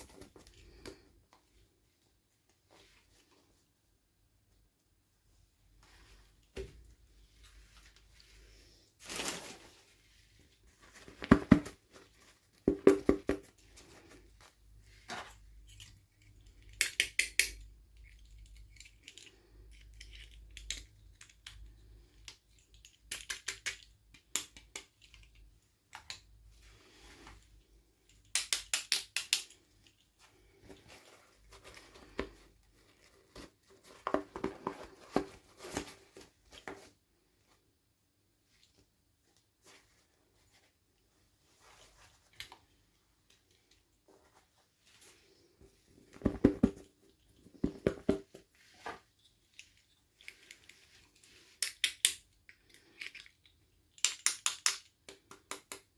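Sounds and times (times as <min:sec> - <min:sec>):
small plastic pieces clicking: 0:15.7 - 0:26.2, 0:28.1 - 0:30.0, 0:51.6 - 0:55.9.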